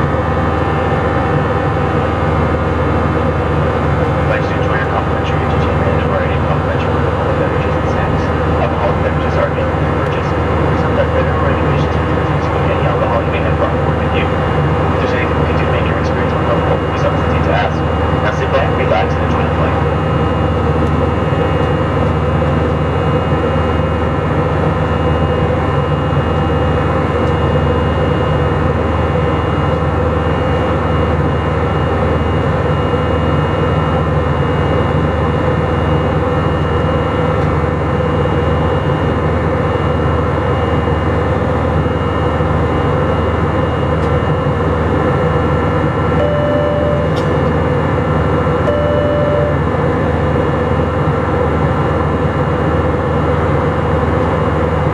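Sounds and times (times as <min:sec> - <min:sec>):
jet engine cabin roar: 0:00.0 - 0:54.9
short electronic tones: 0:46.2 - 0:47.3, 0:48.7 - 0:49.7.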